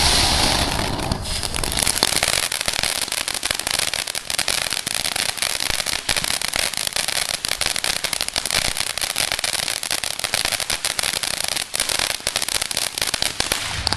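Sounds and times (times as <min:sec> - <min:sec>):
firework crackling: 0:00.0 - 0:13.9.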